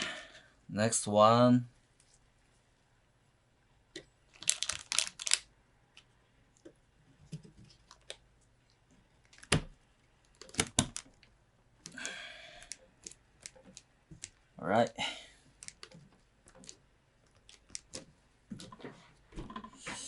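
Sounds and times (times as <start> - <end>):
plastic parts clicking: 4.0 - 6.1, 9.2 - 14.4, 15.6 - 18.1.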